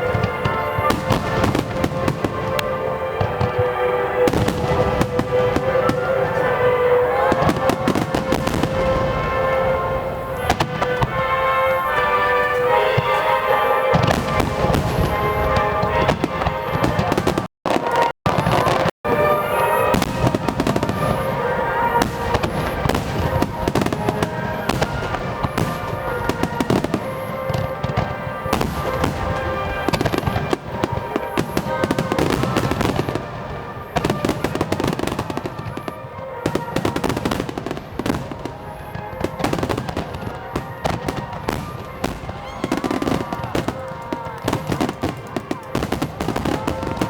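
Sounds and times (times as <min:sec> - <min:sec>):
music playing: 0:00.0 - 0:17.4
fireworks bursting and crackling: 0:00.0 - 0:47.0.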